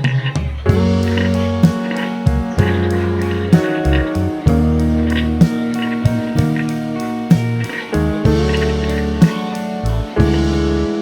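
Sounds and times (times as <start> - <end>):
plucked guitar: 0.0 - 11.0
bass line: 0.4 - 11.0.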